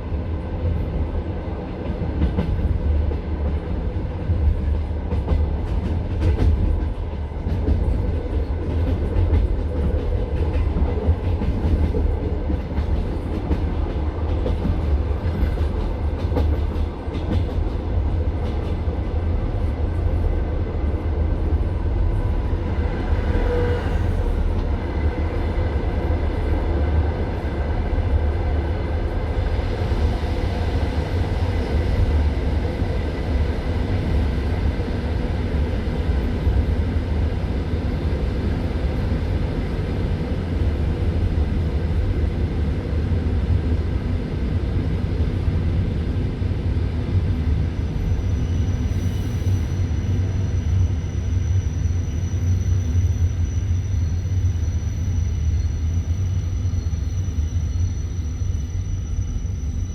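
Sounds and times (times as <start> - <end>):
train wheels rumbling: 0.0 - 59.9
rail joint clicks: 1.8 - 20.4, 23.2 - 24.9.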